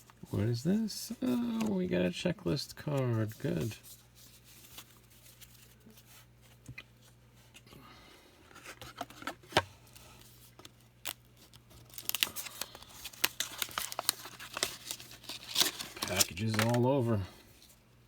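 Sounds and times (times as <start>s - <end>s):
card wrappers crinkling and tearing: 8.9s - 17.7s.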